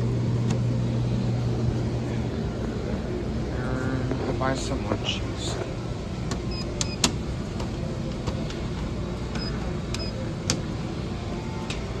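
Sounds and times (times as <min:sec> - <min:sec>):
low machine hum: 0:00.0 - 0:12.0.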